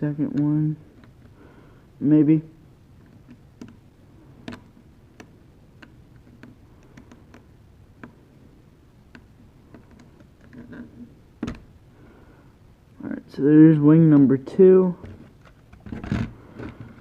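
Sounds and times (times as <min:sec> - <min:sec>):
drone parts clicking and tapping: 0:04.4 - 0:08.3, 0:09.0 - 0:11.7.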